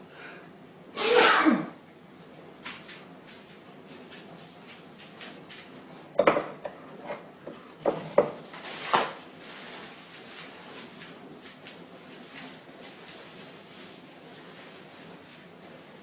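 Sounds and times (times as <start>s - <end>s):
faint room noise: 0.0s - 16.0s
sharp knocks and clatters: 6.2s - 6.8s.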